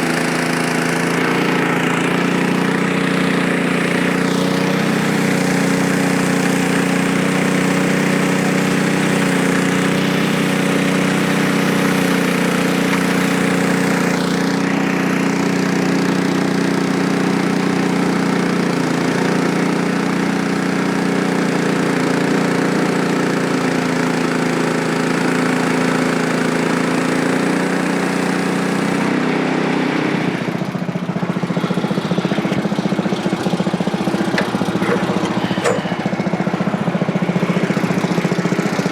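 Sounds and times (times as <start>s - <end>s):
bandsaw blade sawing log: 0.0s - 15.2s, 33.4s - 37.1s
small gas engine running: 0.0s - 38.9s.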